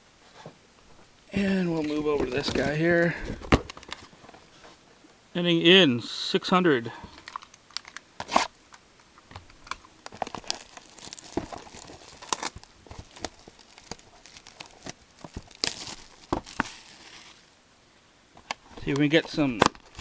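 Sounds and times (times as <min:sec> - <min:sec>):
plastic wrapping crinkling and tearing: 0:07.2 - 0:08.5, 0:09.5 - 0:17.5, 0:19.0 - 0:20.0.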